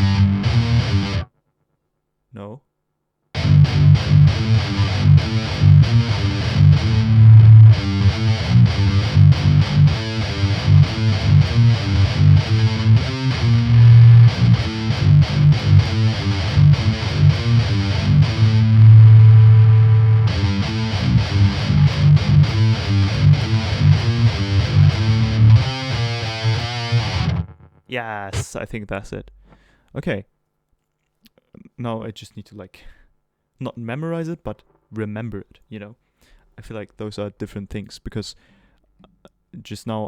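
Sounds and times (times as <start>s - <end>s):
distorted electric guitar metal riff: 0.0s - 1.3s, 3.4s - 27.7s.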